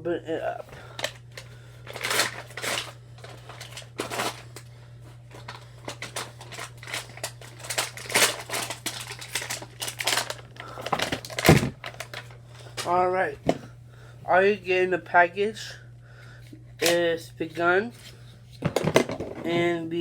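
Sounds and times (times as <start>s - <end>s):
steady low hum: 0.0s - 20.0s
packaging rustling and tearing: 0.7s - 12.9s.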